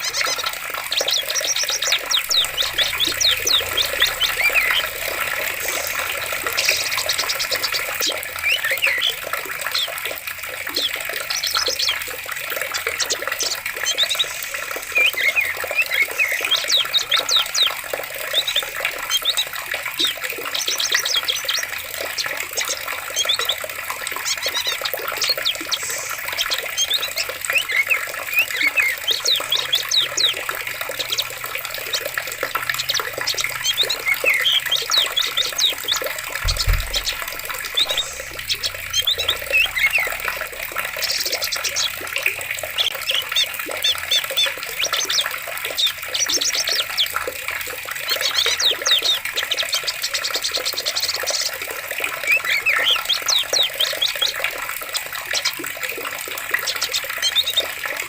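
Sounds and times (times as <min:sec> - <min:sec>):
small birds chirping: 0:00.0 - 0:47.3, 0:48.0 - 0:54.6
stream water running: 0:00.0 - 0:58.0
low thump: 0:36.4 - 0:38.6.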